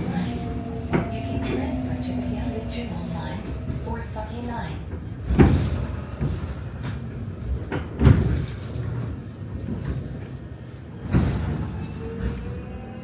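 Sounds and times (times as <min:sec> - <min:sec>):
sliding doors clunking: 0:00.0 - 0:10.3
train car rumbling: 0:00.0 - 0:13.0.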